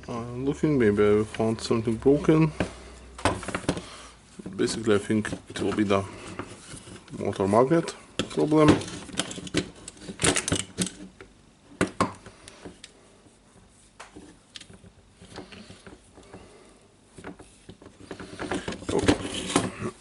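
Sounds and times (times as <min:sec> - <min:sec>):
tool parts clicking and knocking: 0:08.2 - 0:12.9.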